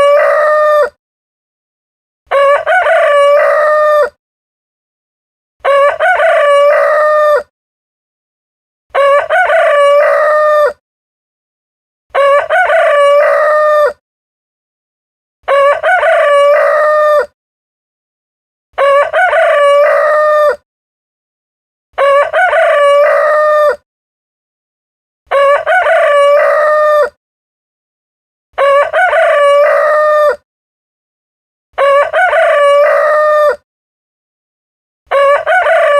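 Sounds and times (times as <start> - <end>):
rooster crowing: 0.0 - 1.0, 2.3 - 4.2, 5.6 - 7.5, 9.0 - 10.8, 12.1 - 14.0, 15.5 - 17.3, 18.8 - 20.6, 22.0 - 23.8, 25.3 - 27.2, 28.6 - 30.4, 31.8 - 33.6, 35.1 - 35.9.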